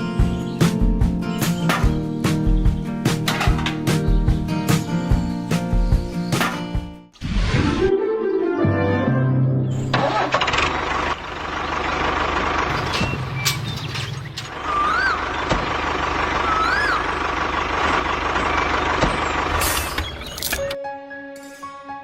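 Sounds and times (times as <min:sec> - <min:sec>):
rising and falling chirps: 0:13.0 - 0:15.6, 0:16.2 - 0:17.4.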